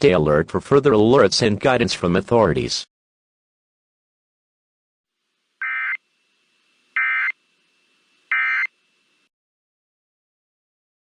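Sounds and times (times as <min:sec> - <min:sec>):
screeching digital data bursts: 0:07.0 - 0:07.4, 0:08.3 - 0:08.7.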